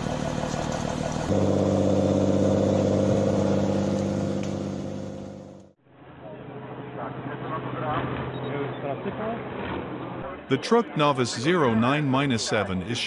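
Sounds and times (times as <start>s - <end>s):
engine working hard: 0.0s - 5.8s.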